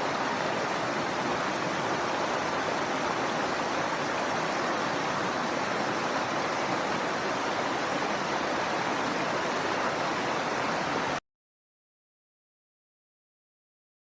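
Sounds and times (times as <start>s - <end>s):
rushing river and waterfall: 0.0s - 11.2s.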